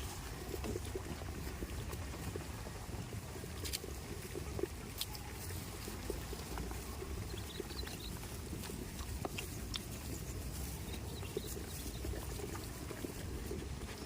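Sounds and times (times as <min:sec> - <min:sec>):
steady low rumble: 0:00.0 - 0:14.0.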